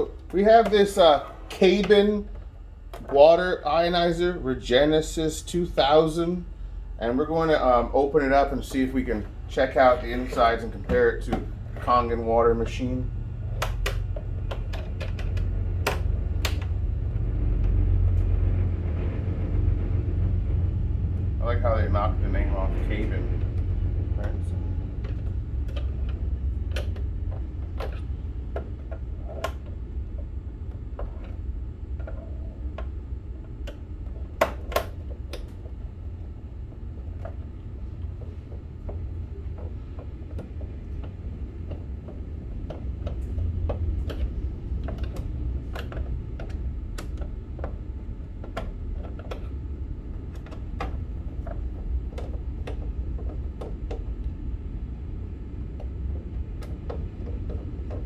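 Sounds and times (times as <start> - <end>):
low rumble: 0.0 - 48.9
sharp plastic clacks: 13.5 - 16.8, 37.2 - 47.8
clicks of hand tools and plastic: 13.6 - 16.8, 22.6 - 30.3, 32.0 - 35.8, 37.2 - 54.4.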